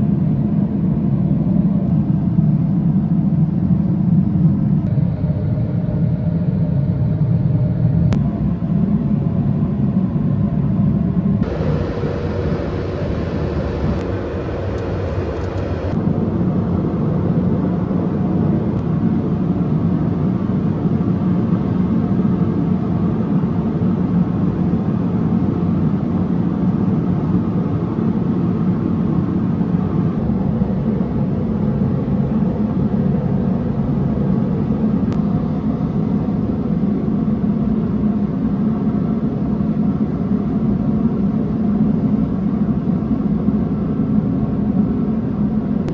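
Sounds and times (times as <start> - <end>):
machine roaring: 11.4 - 16.0.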